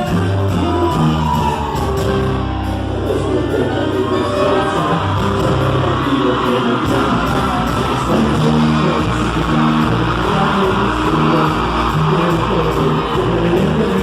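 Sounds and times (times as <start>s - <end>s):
bass guitar: 0.0s - 14.0s
strummed guitar: 0.0s - 14.0s
steady drum beat: 4.8s - 14.0s.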